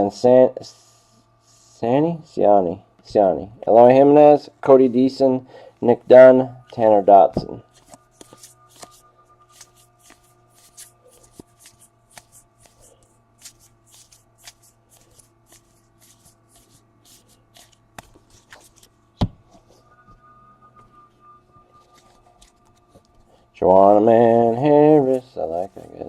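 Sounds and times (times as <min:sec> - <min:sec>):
cards being flipped: 0:06.7 - 0:19.8, 0:21.8 - 0:23.2.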